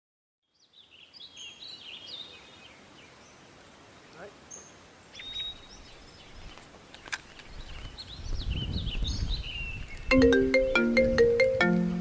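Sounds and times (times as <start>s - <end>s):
birds chirping: 0.6s - 12.0s
phone marimba ringtone: 10.1s - 12.0s.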